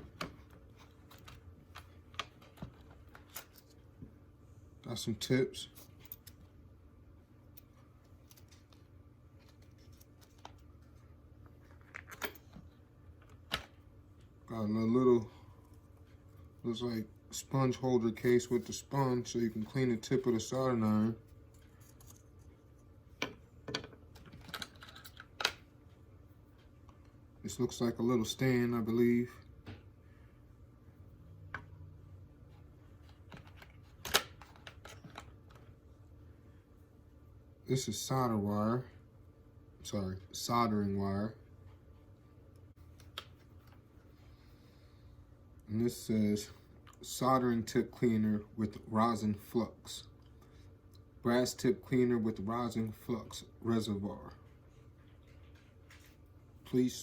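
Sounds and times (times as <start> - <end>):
small parts and packaging clicking: 23.2 - 25.6, 33.0 - 35.7.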